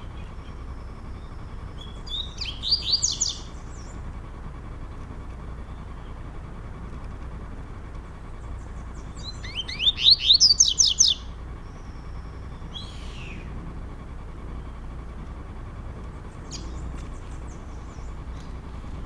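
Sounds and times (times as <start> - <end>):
bird singing high sweeping notes: 0.0 - 4.1, 8.5 - 13.6, 16.4 - 18.4.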